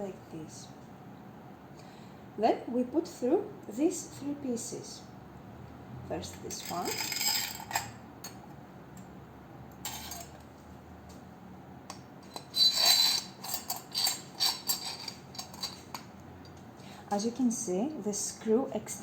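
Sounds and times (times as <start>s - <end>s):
hard parts clinking and rattling: 6.4s - 8.4s, 9.8s - 10.5s, 12.2s - 16.6s.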